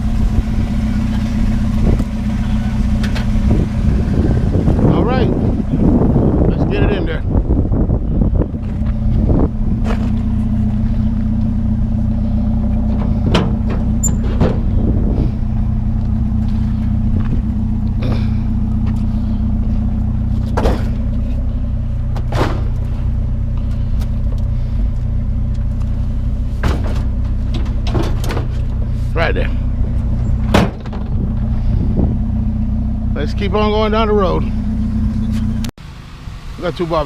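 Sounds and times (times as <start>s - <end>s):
vehicle engine idling: 0.0s - 37.0s.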